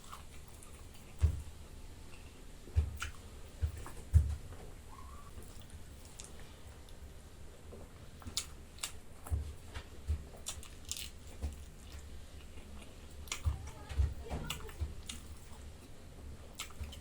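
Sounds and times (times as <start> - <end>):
person chewing food: 0.0 - 17.0
wet mouth smacks and clicks: 8.2 - 9.0, 16.5 - 17.0.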